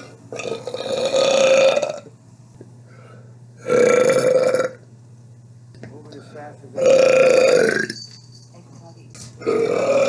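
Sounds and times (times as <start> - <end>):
loud burps: 0.3 - 2.1, 3.6 - 4.8, 6.8 - 8.0, 9.4 - 10.0.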